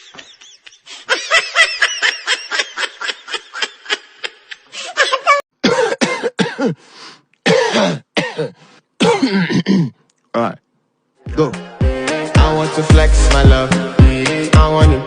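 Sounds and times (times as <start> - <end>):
person laughing: 0.0 - 5.4
person coughing: 5.6 - 6.8, 7.4 - 10.0.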